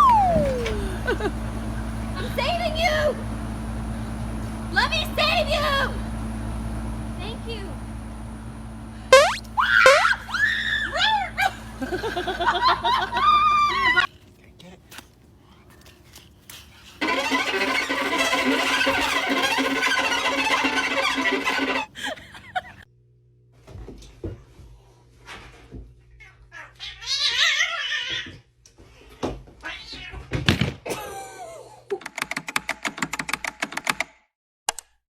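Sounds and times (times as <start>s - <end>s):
cat meowing and yowling: 0.0s - 1.0s, 26.2s - 28.3s.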